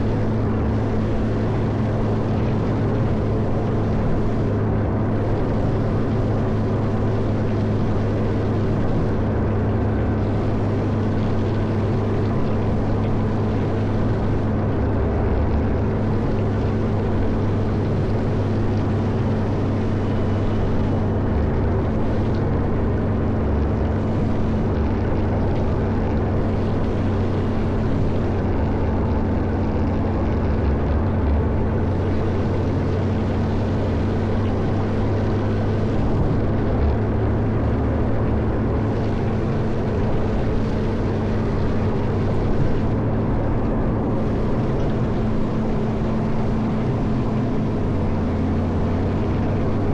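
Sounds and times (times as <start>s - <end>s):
diesel engine droning: 0.0s - 49.9s.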